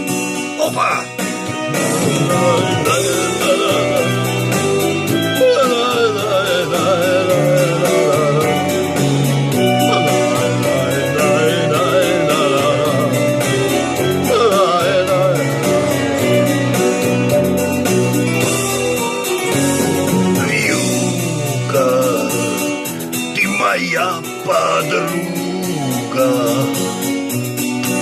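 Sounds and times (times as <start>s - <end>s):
bass and keyboard chords: 0.0s - 28.0s
wavering lead melody: 0.4s - 23.4s
drum beat: 9.0s - 12.9s.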